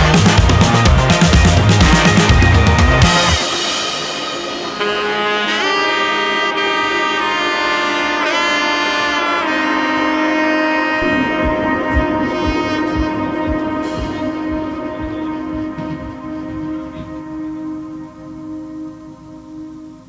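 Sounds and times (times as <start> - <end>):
kick drum beat: 0.0 - 3.5, 11.0 - 17.2.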